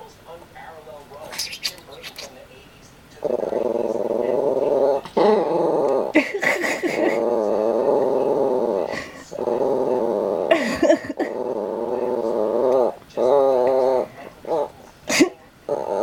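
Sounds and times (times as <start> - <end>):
dog moaning and growling: 3.2 - 16.0.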